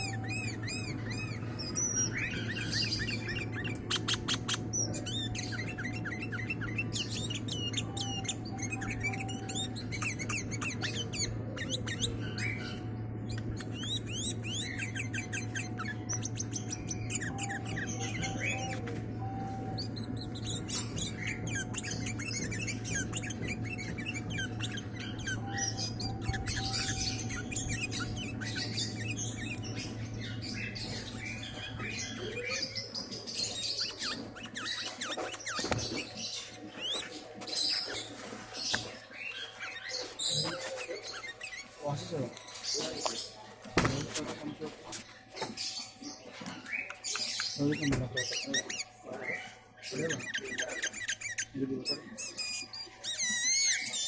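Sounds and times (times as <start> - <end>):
steady low hum: 0.0 - 41.0
songbird chirping and trilling: 0.0 - 54.0.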